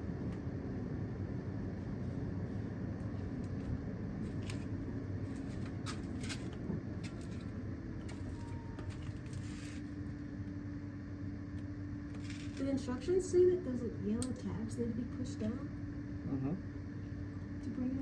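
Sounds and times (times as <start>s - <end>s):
steady low hum: 0.0s - 18.0s
light clicks and rustles: 5.4s - 9.8s.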